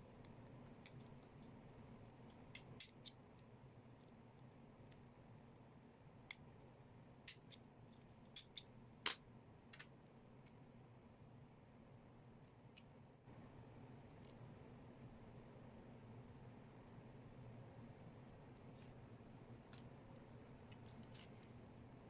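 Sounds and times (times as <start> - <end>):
small clicks and ticks: 0.2 - 1.6.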